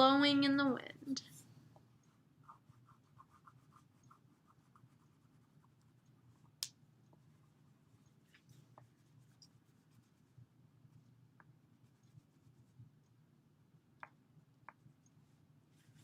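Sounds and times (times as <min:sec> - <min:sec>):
drawing tool scratching on paper: 0:02.1 - 0:06.5.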